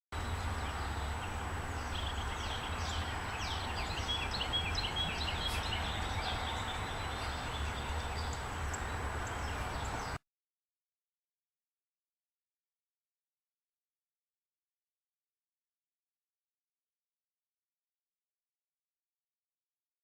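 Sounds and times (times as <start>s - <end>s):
low outdoor rumble: 0.2s - 10.2s
songbirds chirping: 0.2s - 10.2s.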